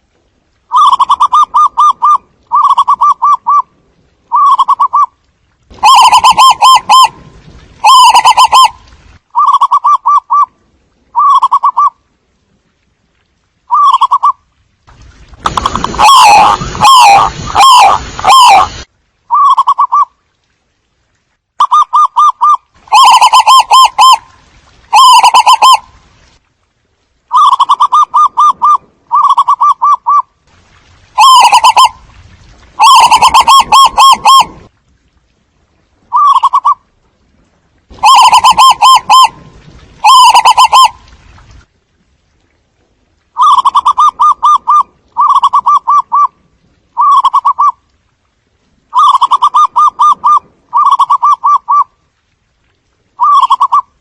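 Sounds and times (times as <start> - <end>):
dove cooing: 38.0 - 39.3.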